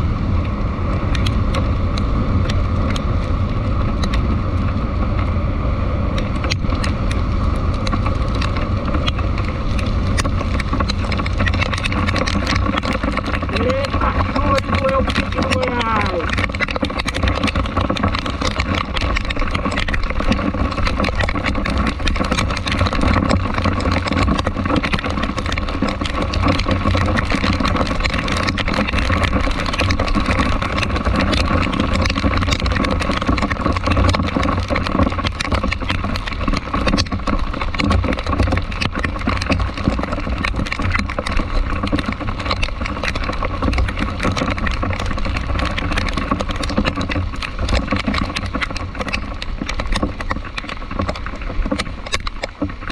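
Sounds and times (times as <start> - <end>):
faint steady whine: 0.0 - 34.4
road noise: 0.0 - 52.9
vehicle engine rumble: 0.0 - 52.9.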